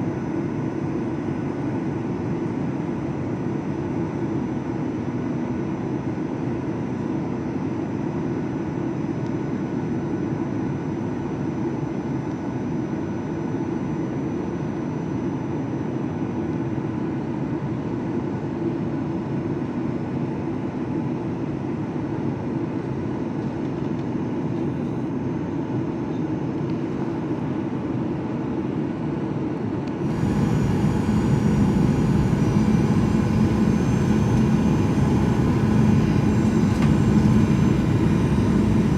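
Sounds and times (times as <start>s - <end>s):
jet cabin roar: 26.4s - 38.9s
faint steady tones: 30.0s - 38.9s.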